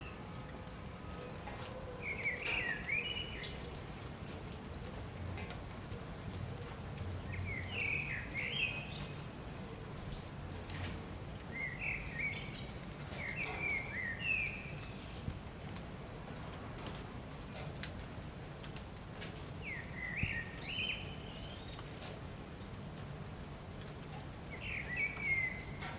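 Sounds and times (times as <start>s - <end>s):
rain falling: 0.0s - 25.9s
water drips: 0.0s - 25.9s
songbird chirping: 1.9s - 4.1s, 7.1s - 9.3s, 11.4s - 15.3s, 19.6s - 22.3s, 24.5s - 25.9s.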